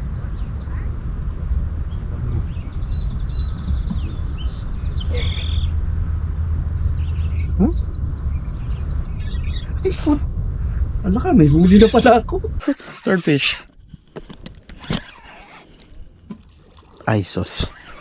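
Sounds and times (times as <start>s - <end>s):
birds chirping: 0.0s - 12.6s
low outdoor rumble: 0.0s - 12.6s.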